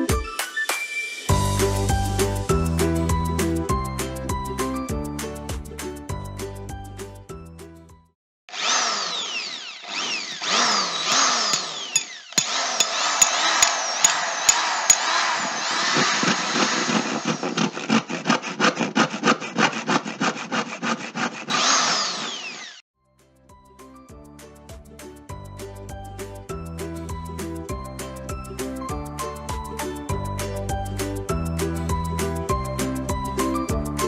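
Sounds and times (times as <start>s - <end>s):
tool cutting through material: 8.5s - 22.9s.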